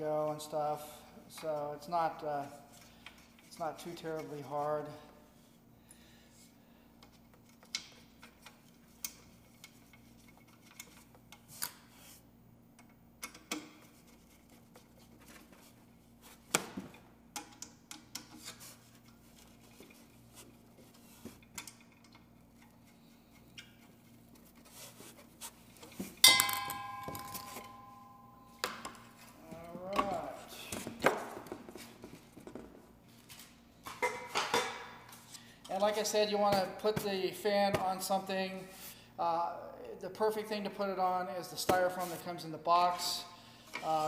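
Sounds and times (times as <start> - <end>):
steady low hum: 0.0 - 34.1
loud ringing metallic clank: 26.2 - 28.5.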